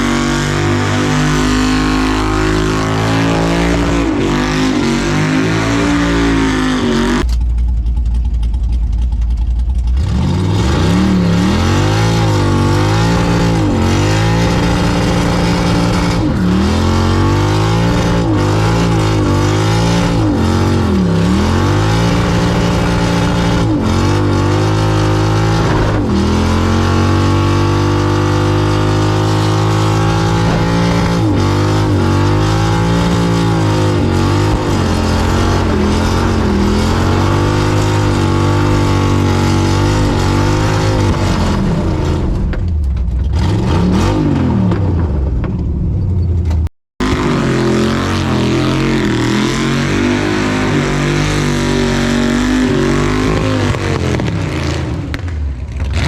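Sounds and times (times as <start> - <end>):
car engine revving: 0.0 - 56.0
deep low rumble: 0.8 - 27.2, 29.7 - 46.7.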